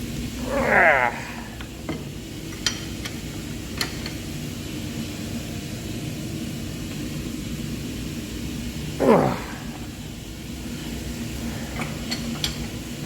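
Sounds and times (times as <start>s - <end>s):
machinery humming: 0.0s - 1.9s, 4.9s - 13.0s.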